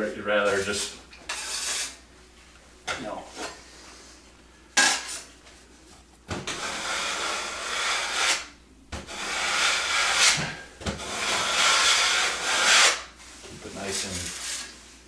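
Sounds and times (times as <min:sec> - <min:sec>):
taping knife scraping compound: 0:00.6 - 0:02.0, 0:06.5 - 0:13.1.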